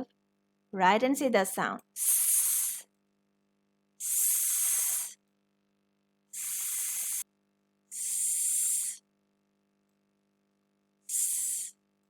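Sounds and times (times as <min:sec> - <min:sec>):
person making hissing s sound: 0:02.0 - 0:02.9, 0:04.0 - 0:05.2, 0:06.4 - 0:07.2, 0:07.9 - 0:09.0, 0:11.1 - 0:11.8.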